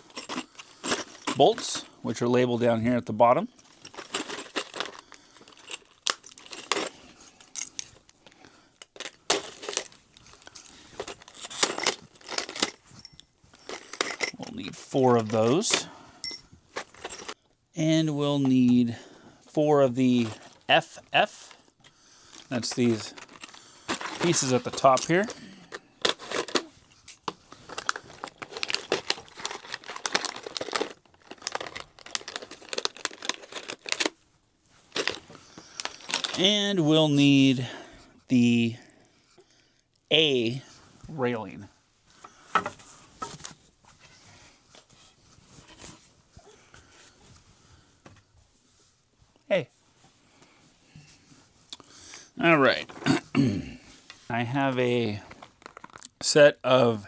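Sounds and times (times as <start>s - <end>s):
metal bolts clinking: 11.0s - 17.4s, 22.5s - 26.7s
packaging crinkling: 27.4s - 34.2s, 34.9s - 36.4s, 55.3s - 56.2s.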